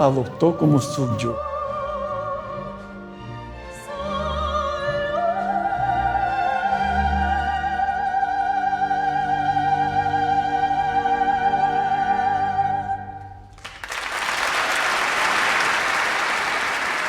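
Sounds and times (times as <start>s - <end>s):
operatic singing with vibrato: 0.0s - 2.9s, 3.7s - 13.2s
orchestral accompaniment: 0.0s - 5.8s.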